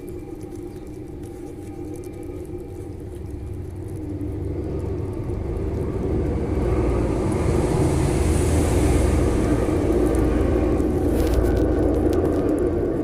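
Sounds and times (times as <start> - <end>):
low rumble: 0.0 - 13.0.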